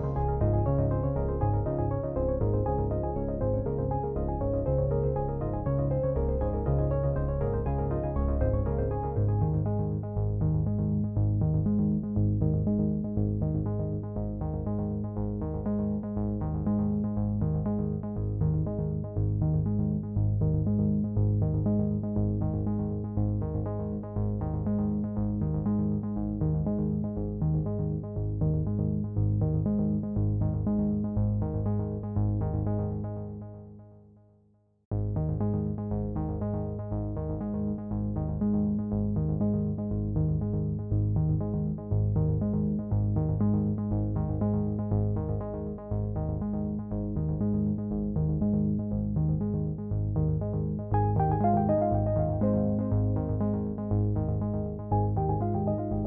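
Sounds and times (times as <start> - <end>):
synthesizer music with beat: 0.0 - 11.1, 50.9 - 56.0.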